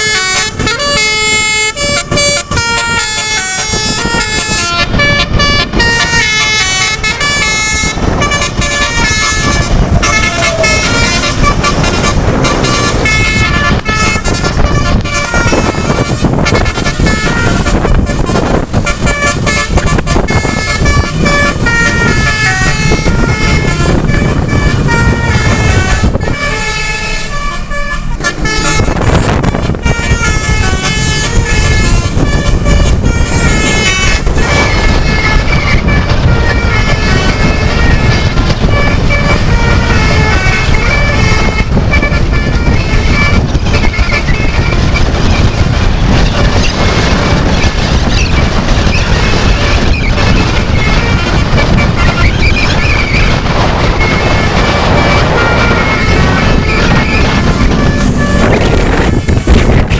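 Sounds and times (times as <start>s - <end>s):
multi-tone air horn tune: 0.0s - 59.9s
vehicle engine and road noise: 0.0s - 59.9s.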